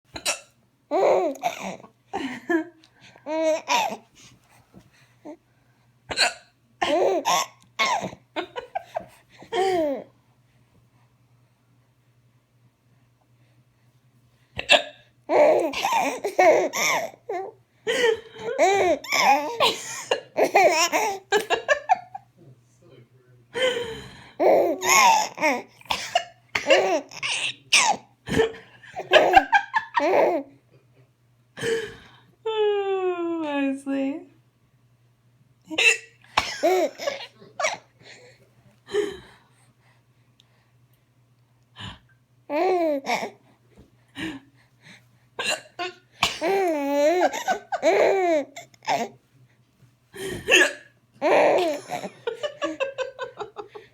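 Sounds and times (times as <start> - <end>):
woman hiccuping: 0.1 - 0.5, 14.6 - 15.0, 35.7 - 36.6, 50.5 - 50.9
baby laughing: 18.4 - 22.1, 24.4 - 25.7, 36.6 - 37.8, 46.4 - 49.1, 51.2 - 53.9.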